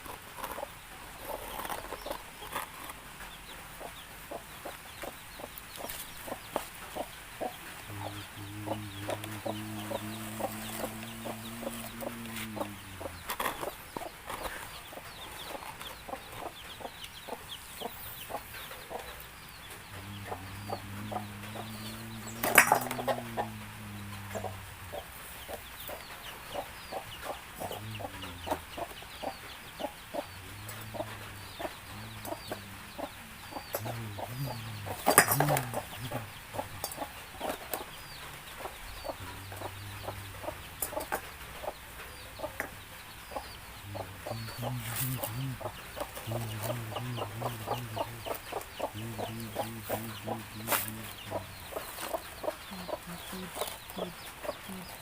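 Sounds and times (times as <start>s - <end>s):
chickens clucking: 0.0s - 55.0s
engine droning: 7.8s - 14.7s, 19.8s - 37.6s, 39.0s - 41.1s, 43.8s - 55.0s.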